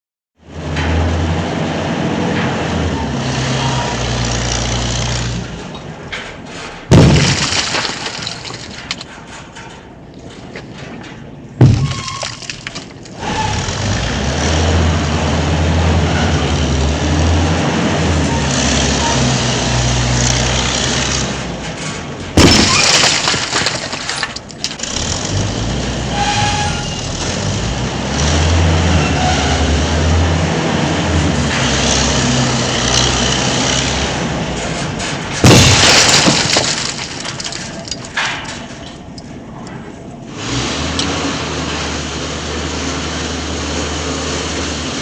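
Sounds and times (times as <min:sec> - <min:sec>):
heavy machine engine running: 0:00.4 - 0:12.2, 0:12.8 - 0:45.0
loud crash: 0:06.9 - 0:08.6, 0:11.6 - 0:12.5, 0:22.4 - 0:24.4, 0:35.3 - 0:38.7.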